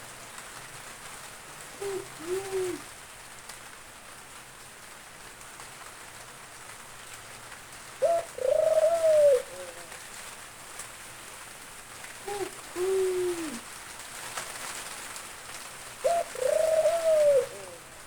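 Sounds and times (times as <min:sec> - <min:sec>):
rain falling: 0:00.0 - 0:18.0
dove cooing: 0:01.8 - 0:02.9, 0:08.0 - 0:10.0, 0:12.2 - 0:13.7, 0:16.0 - 0:18.0.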